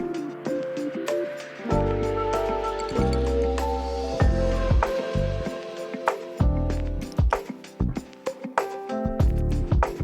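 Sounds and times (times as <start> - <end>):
deep bass notes: 1.7 - 5.5, 6.4 - 7.2.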